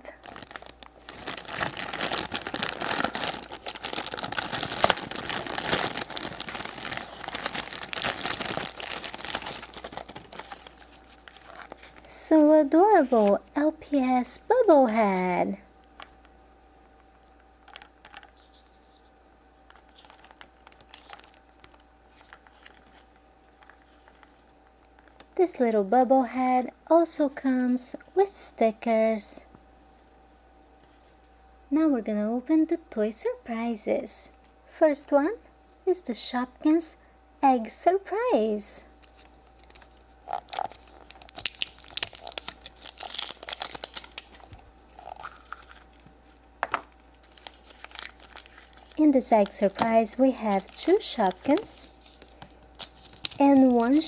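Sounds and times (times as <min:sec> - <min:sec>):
plastic packaging crinkling: 0:00.0 - 0:13.6, 0:19.6 - 0:25.9, 0:38.9 - 0:54.0.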